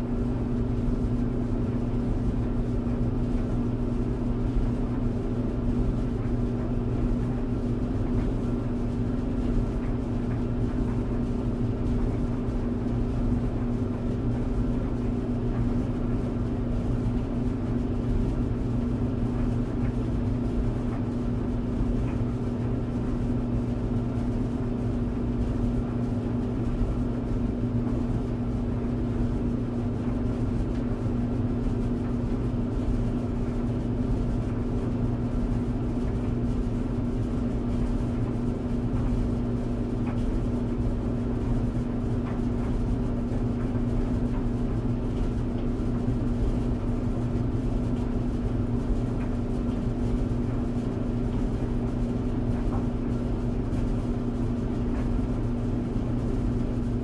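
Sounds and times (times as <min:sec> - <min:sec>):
tumble dryer running: 0:00.0 - 0:57.0.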